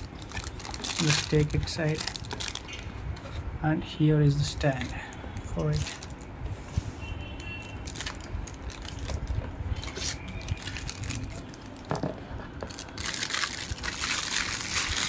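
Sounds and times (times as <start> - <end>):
packaging crinkling: 0.0 - 2.9, 7.7 - 15.0.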